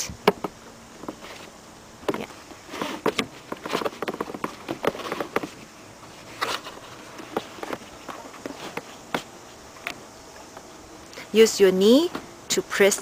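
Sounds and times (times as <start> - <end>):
rustling plastic and webbing: 1.0 - 9.6.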